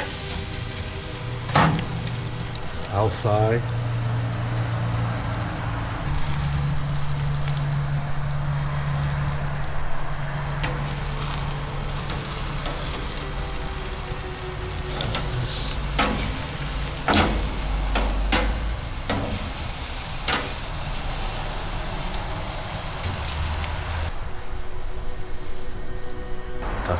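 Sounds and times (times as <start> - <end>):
steaks sizzling on a grill: 0.0 - 26.9.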